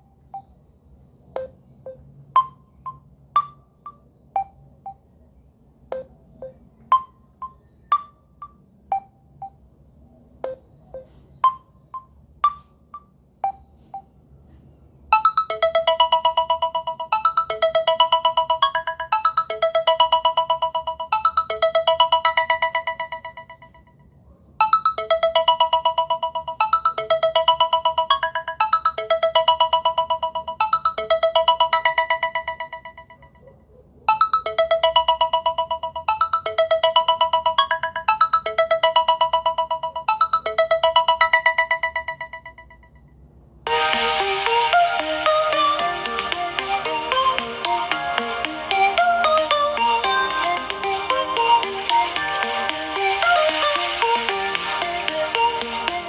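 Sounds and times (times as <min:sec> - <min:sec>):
fast-pulsing melodic ringtone: 0:01.3 - 0:05.1, 0:05.9 - 0:09.6, 0:10.4 - 0:14.1, 0:15.1 - 0:43.1, 0:43.7 - 0:56.0
short knocking ringtone notes: 0:01.4 - 0:05.0, 0:05.9 - 0:09.6, 0:10.4 - 0:14.1.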